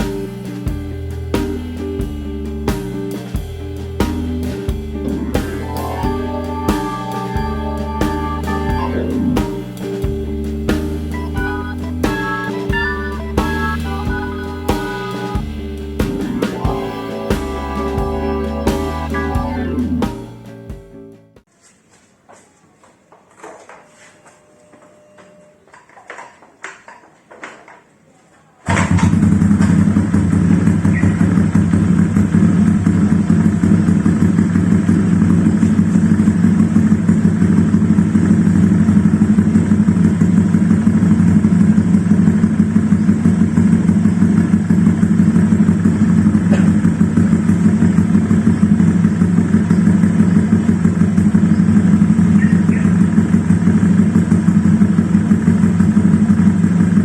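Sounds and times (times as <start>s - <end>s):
scooter engine idling: 3.4s - 20.3s, 28.7s - 57.0s.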